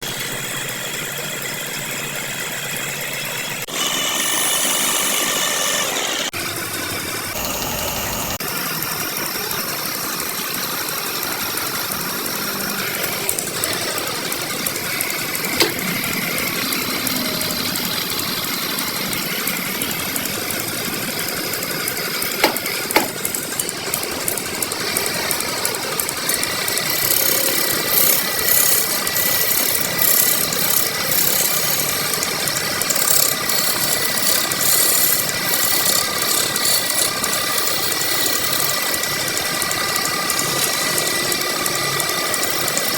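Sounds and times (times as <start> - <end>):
power tool shaping wood: 3.6 - 8.4, 12.1 - 42.9
high-pitched whine: 7.2 - 8.5
sharp knocks: 22.4 - 23.2
tool rasping into wood: 26.2 - 42.9.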